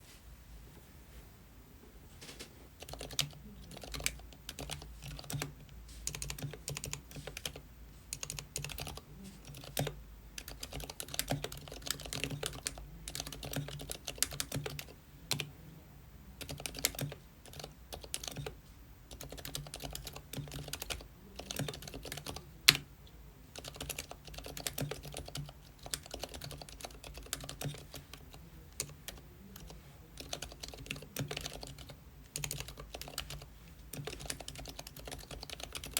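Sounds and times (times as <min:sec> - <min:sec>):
mechanical keyboard typing: 0:02.8 - 0:15.5, 0:16.4 - 0:22.9, 0:23.5 - 0:35.9.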